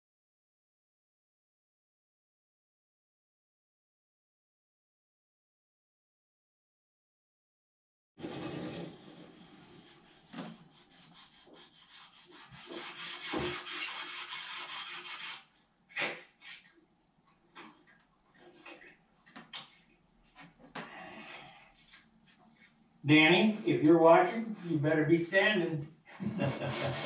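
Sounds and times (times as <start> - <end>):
sandpaper rubbing: 9.1 - 16.7, 26.2 - 27.0.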